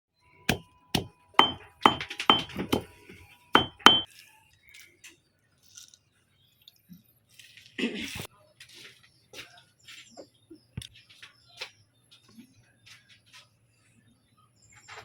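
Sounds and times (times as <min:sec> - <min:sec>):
hard clinking strikes with ringing: 0:01.0 - 0:02.9, 0:03.6 - 0:04.1.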